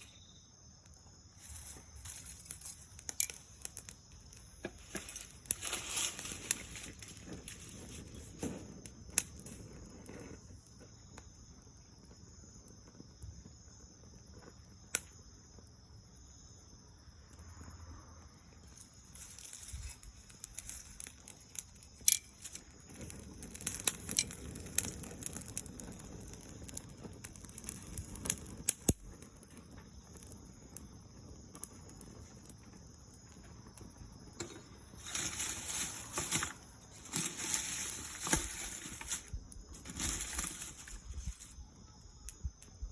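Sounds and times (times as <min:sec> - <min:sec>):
fire crackling and popping: 0:00.0 - 0:42.9
leaves rustling: 0:01.4 - 0:03.7, 0:04.3 - 0:08.6, 0:19.1 - 0:21.5, 0:34.4 - 0:41.6.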